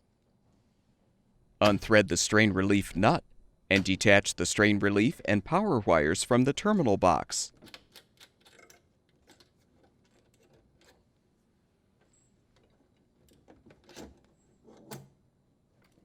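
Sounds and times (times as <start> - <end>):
small parts clicking and tapping: 7.6 - 11.0.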